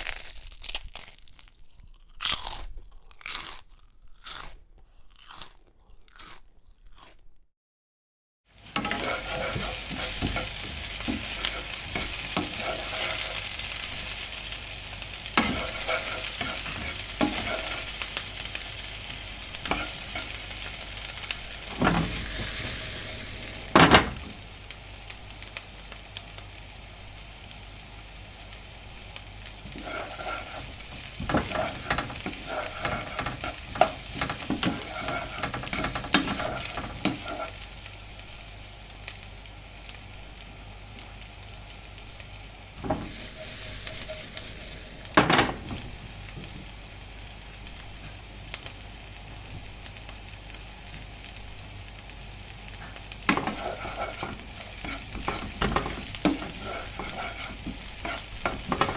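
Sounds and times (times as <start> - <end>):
food sizzling in a frying pan: 8.5 - 58.9
utensil scraping a pan: 8.7 - 13.7, 15.3 - 18.0, 19.5 - 20.5, 21.4 - 24.4, 29.6 - 37.6, 42.8 - 45.9, 53.3 - 58.9.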